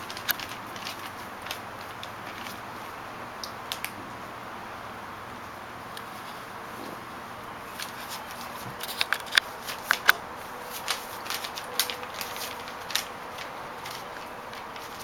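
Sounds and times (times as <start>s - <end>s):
puppies scuffling: 6.0s - 15.0s.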